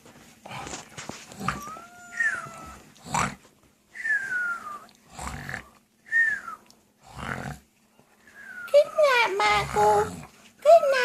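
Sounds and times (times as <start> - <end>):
dog whining: 1.3 - 3.3.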